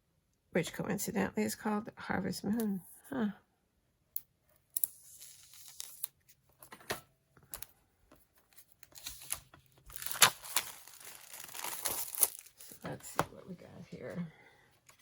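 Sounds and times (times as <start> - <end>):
paper wrapper tearing and crinkling: 4.8 - 6.2, 8.7 - 12.8.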